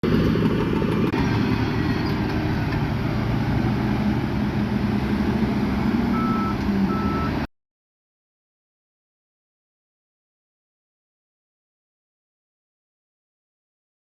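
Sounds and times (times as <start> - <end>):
heavy machinery diesel engine: 0.0 - 7.5
short high beep: 6.1 - 7.4.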